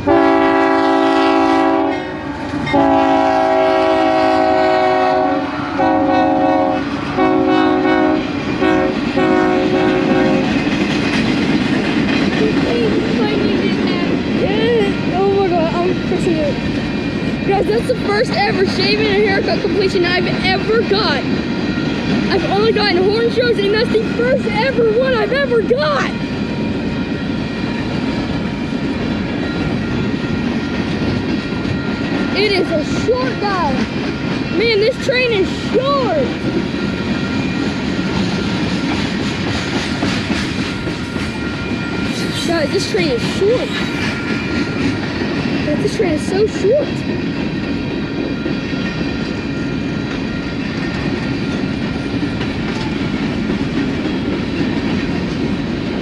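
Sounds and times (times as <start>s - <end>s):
freight train rumbling past: 0.0s - 56.0s.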